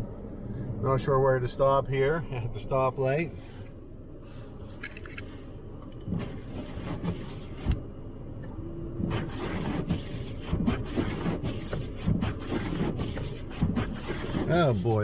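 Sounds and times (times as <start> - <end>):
low engine rumble: 0.0 - 10.7
windshield wipers swishing: 6.1 - 7.8, 9.0 - 15.0.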